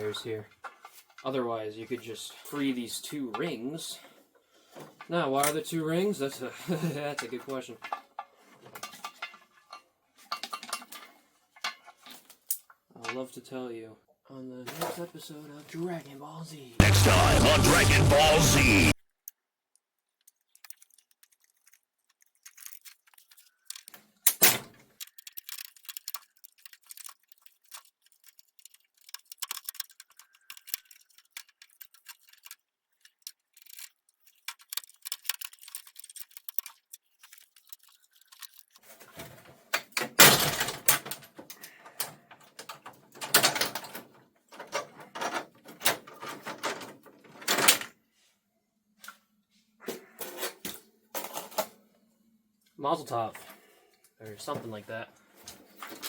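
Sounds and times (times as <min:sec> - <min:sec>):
television parts clicking and rattling: 0:20.2 - 0:41.4.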